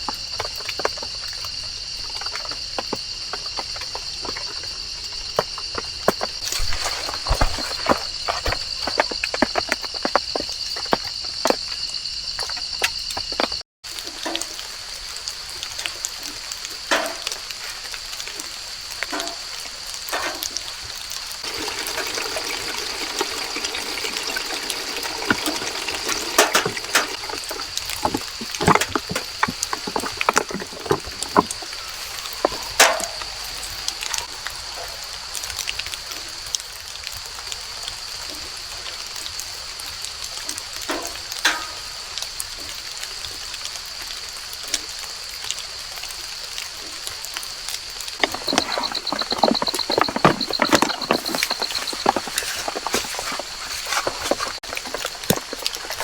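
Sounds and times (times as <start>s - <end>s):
high insect drone: 0.0s - 56.0s
rain dripping on leaves: 13.8s - 29.8s, 31.5s - 56.0s.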